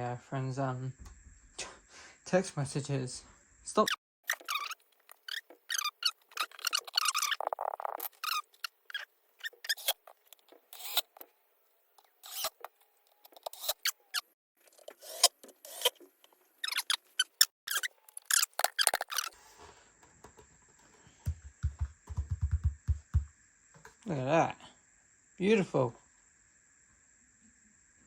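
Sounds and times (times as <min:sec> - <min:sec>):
faint high whine: 0:19.3 - 0:28.0.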